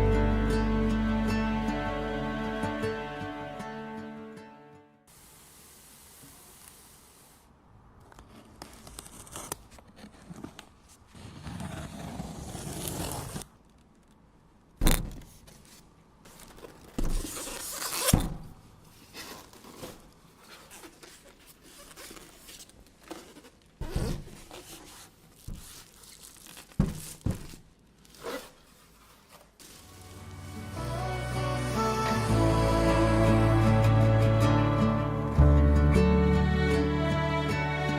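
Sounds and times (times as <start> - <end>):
packaging scraping and rustling: 8.2 - 13.5, 14.9 - 18.2, 18.9 - 30.3.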